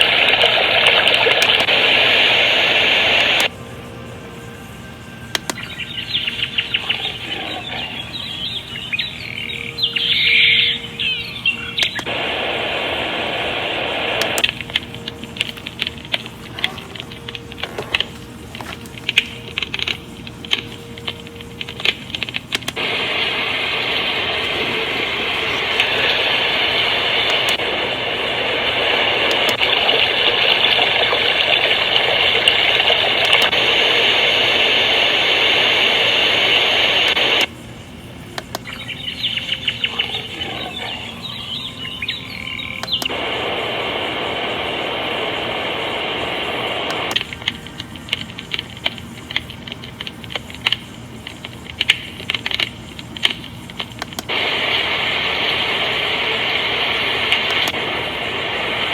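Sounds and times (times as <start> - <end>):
crackling clicks: 0.0 - 58.9
steady even hiss: 0.0 - 58.9
birdsong with chirps: 3.6 - 12.2, 37.4 - 43.3.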